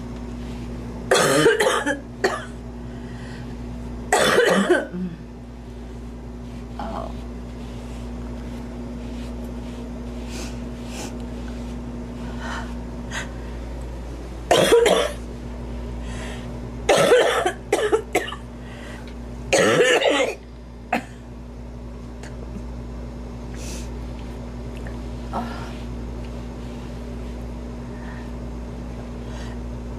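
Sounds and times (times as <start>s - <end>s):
woman coughing: 1.1s - 2.6s, 4.1s - 5.3s, 14.5s - 15.2s, 16.9s - 18.4s, 19.5s - 21.2s.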